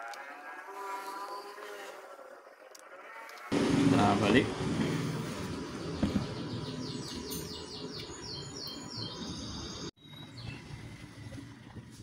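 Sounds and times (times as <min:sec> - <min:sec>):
bird chirping: 0:05.4 - 0:10.8.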